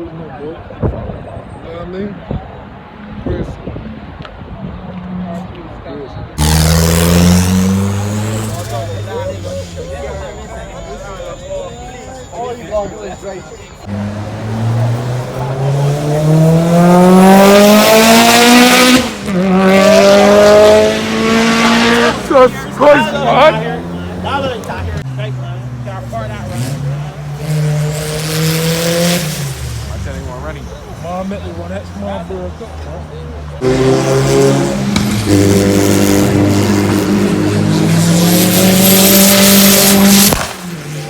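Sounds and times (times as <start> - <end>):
car engine accelerating hard: 6.4 - 41.0
car engine running under load: 32.5 - 41.0.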